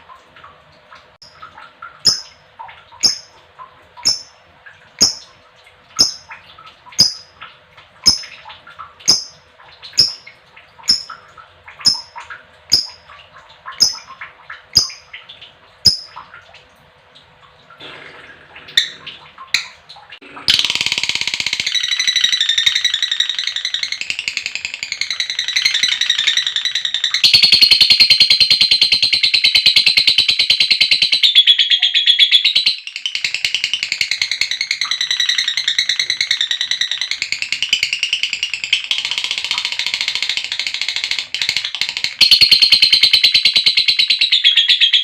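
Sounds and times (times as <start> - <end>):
lovebird chirps: 2.0 - 2.3, 3.0 - 3.3, 4.0 - 4.3, 10.0 - 10.2
rapid chattering bird trill: 2.0 - 2.3, 3.0 - 3.4, 4.0 - 4.4, 6.0 - 6.3, 10.0 - 10.3, 13.8 - 14.1.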